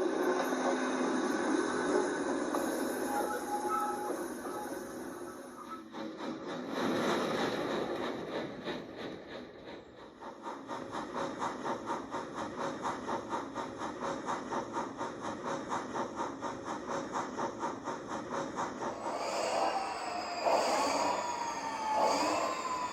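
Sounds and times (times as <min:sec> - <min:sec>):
steam locomotive chuffing: 0:00.0 - 0:22.9
steam hiss: 0:00.6 - 0:22.9
steam whistle blowing: 0:19.0 - 0:22.9.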